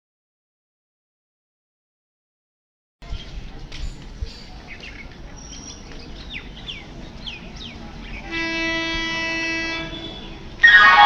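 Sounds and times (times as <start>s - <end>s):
birds chirping: 3.0s - 11.0s
train horn: 8.2s - 11.0s.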